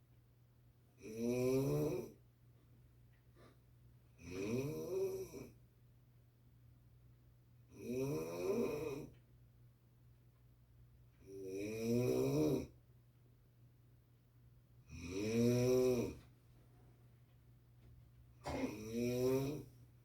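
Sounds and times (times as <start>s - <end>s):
person snoring: 1.0s - 2.1s, 4.2s - 5.5s, 7.7s - 9.1s, 11.3s - 12.7s, 14.9s - 16.2s, 18.4s - 19.7s.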